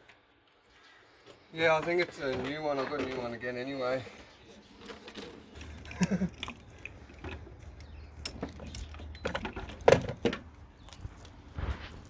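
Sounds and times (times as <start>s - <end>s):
tools and parts clicking and knocking: 4.8s - 10.5s.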